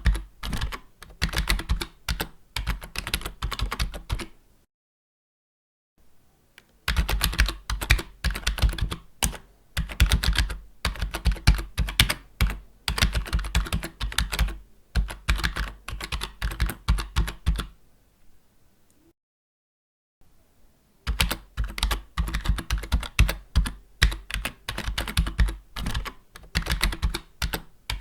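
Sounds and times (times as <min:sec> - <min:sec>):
keyboard typing: 0:00.0 - 0:04.4, 0:06.9 - 0:17.8, 0:21.1 - 0:28.0.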